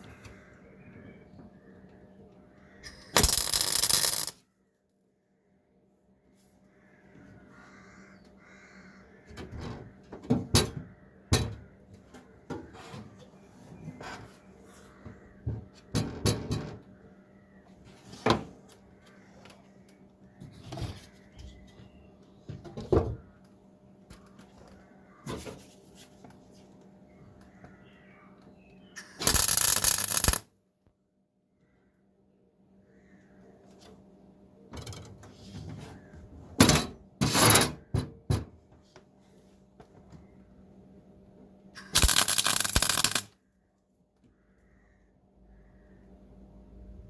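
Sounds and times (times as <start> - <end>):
metal parts and tools knocking: 2.9 - 4.4, 29.0 - 30.4, 41.8 - 43.3.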